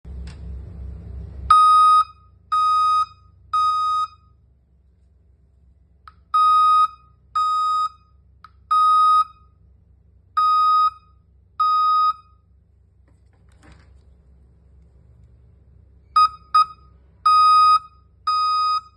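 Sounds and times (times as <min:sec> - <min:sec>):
alarm buzzer beeping: 0:01.5 - 0:04.4, 0:06.4 - 0:09.5, 0:10.4 - 0:12.4, 0:16.2 - 0:18.9.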